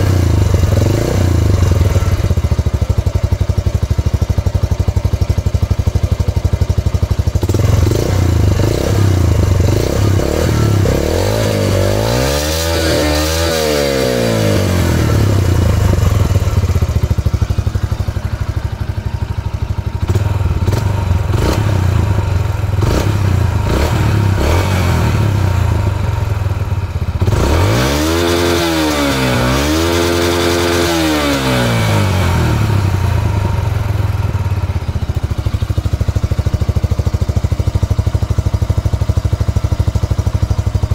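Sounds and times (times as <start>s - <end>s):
motorcycle engine idling and revving: 0.0s - 40.9s.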